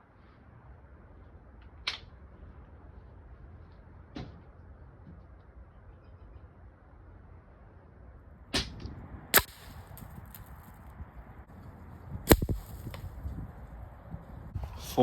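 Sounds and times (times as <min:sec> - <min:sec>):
air rifle shots cracking: 0:08.6 - 0:10.6, 0:12.3 - 0:13.2.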